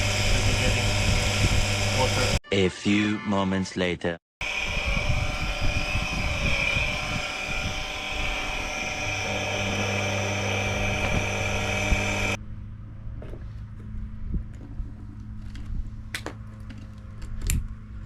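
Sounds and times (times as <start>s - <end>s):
electric pump whining: 0.0s - 2.4s, 4.4s - 12.4s.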